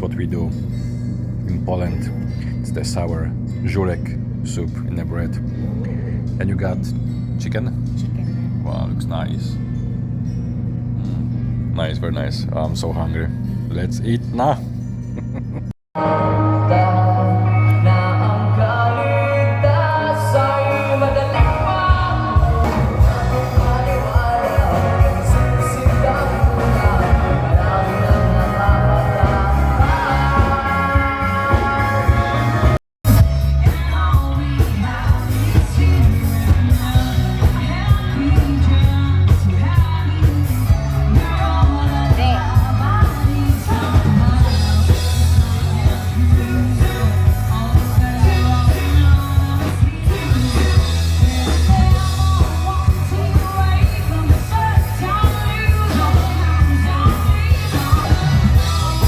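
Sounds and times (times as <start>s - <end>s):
music with singing and beat: 16.0s - 59.0s
rock music: 16.0s - 59.0s.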